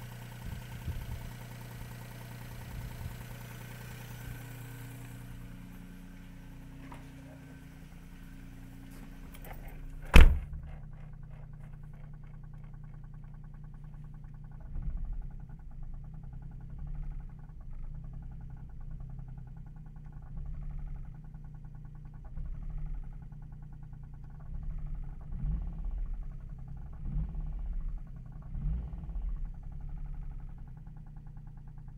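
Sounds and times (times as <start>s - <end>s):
car engine idling: 0.0s - 31.9s
engine knocking: 0.0s - 31.9s
car door slamming: 9.0s - 10.8s.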